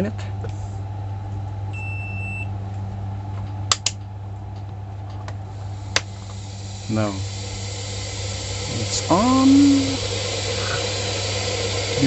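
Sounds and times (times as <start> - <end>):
low hum: 0.0 - 12.0
sharp clicks: 3.7 - 4.1.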